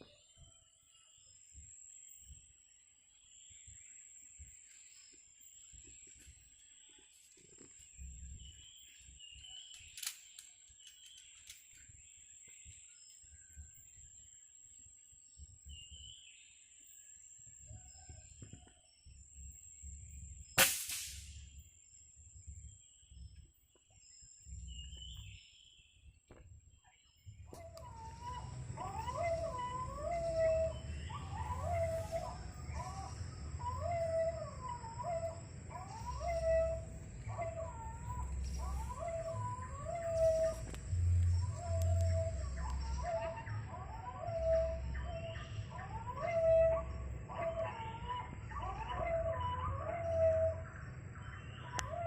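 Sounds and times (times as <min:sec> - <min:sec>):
small birds chirping: 0:00.0 - 0:52.0
sharp gunshot: 0:20.6 - 0:21.4
wavering animal calls: 0:27.4 - 0:52.0
high-pitched whine: 0:27.5 - 0:52.0.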